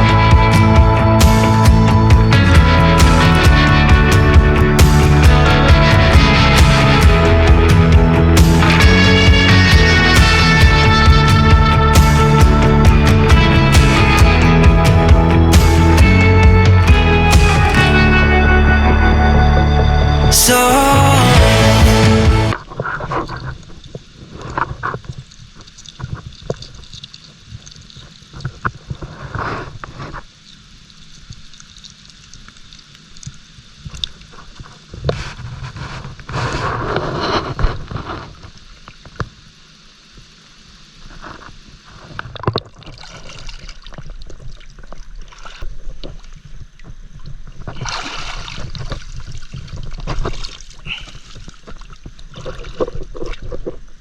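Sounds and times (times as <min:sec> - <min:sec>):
water sloshing and gurgling: 0:22.5 - 0:39.5, 0:41.0 - 0:54.0.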